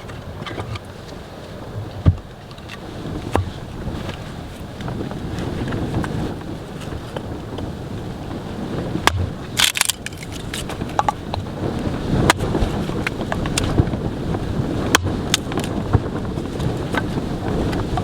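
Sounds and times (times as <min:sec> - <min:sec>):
wind noise on microphone: 0:00.0 - 0:18.0
sharp crunches and knocks: 0:09.0 - 0:11.5.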